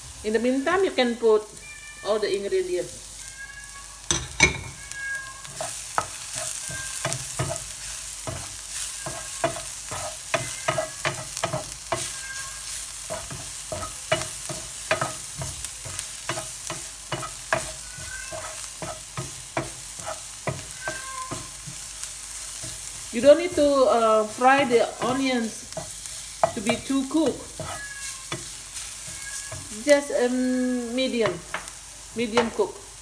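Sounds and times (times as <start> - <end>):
onions sizzling in frying pan: 0.0 - 33.0
utensil scraping a pan: 5.4 - 30.0.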